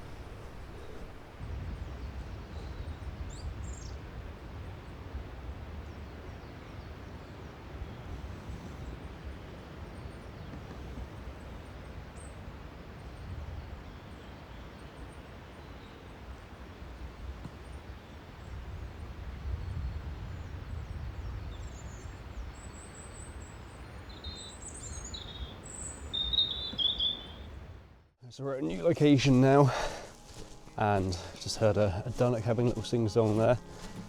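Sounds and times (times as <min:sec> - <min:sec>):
wind: 0:00.0 - 0:34.0
faint high bird chirps: 0:21.3 - 0:27.5.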